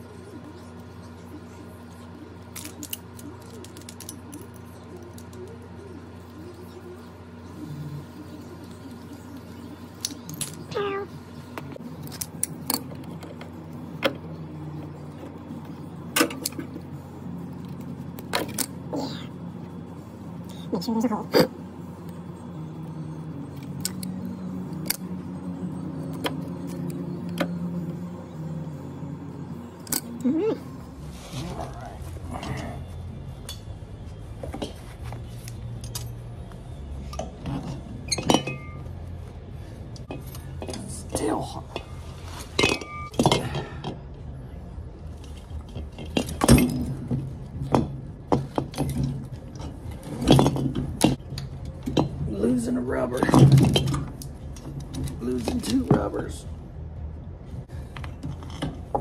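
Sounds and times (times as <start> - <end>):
low machine hum: 0.0 - 59.0
metal tools clinking and knocking: 37.2 - 38.9, 42.6 - 44.0.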